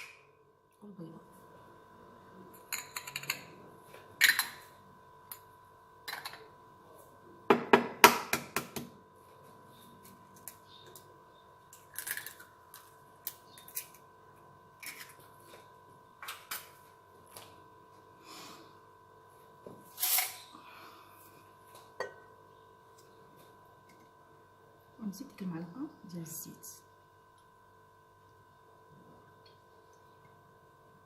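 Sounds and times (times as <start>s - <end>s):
utensils and bowls clicking: 2.7s - 3.5s.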